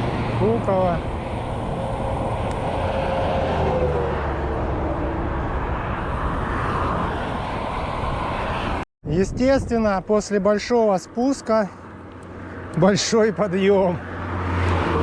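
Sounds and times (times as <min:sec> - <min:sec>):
wind roaring over microphone: 0:00.0 - 0:10.6.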